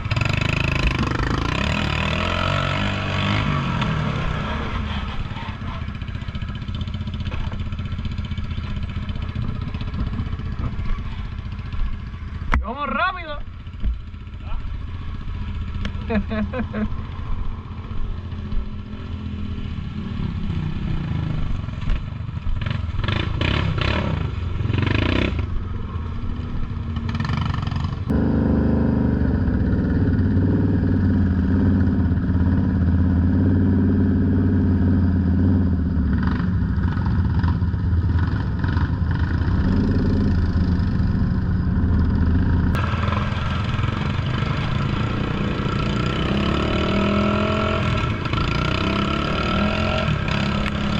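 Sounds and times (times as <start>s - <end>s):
atv engine drone: 0.0s - 50.9s.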